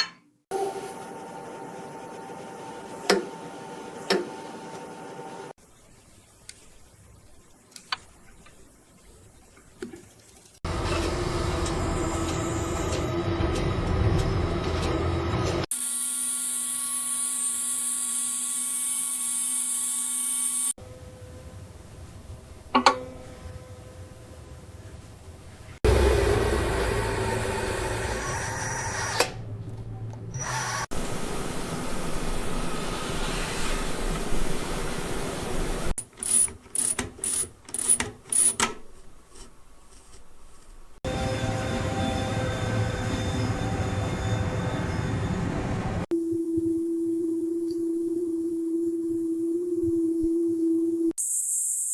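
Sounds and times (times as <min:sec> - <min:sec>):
machine hum: 0:10.6 - 0:15.7, 0:20.8 - 0:36.0, 0:41.0 - 0:51.1
low mechanical rumble: 0:10.7 - 0:15.7, 0:20.8 - 0:30.3.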